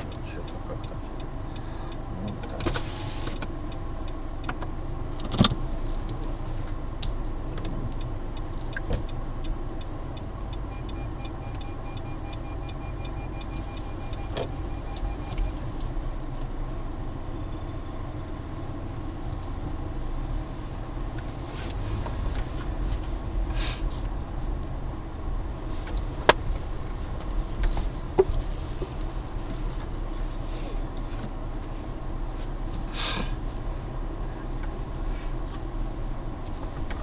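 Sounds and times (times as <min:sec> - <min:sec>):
car rumble: 0:00.0 - 0:37.0
high electronic beeps: 0:10.7 - 0:15.6.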